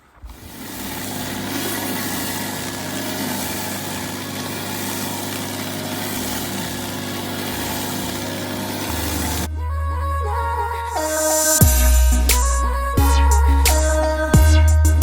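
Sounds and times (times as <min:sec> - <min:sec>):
pressure washer engine running: 0:00.2 - 0:09.5
water spraying on tarmac: 0:00.2 - 0:09.5.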